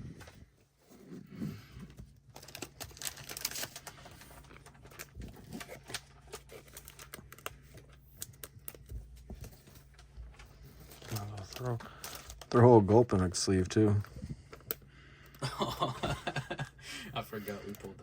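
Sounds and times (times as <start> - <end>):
plastic crinkle: 1.8 - 12.9.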